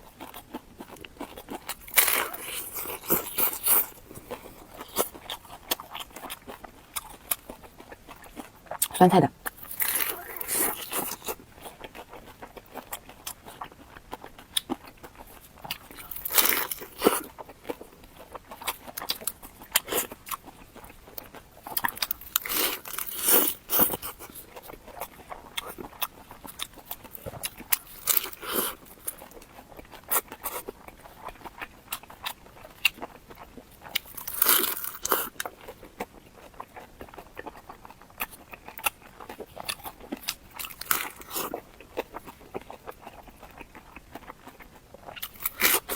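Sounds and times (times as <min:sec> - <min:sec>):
person chewing crunchy food: 0:00.0 - 0:45.9
loud crunching bites: 0:01.3 - 0:04.0, 0:21.8 - 0:24.3, 0:34.0 - 0:35.4, 0:45.2 - 0:45.9.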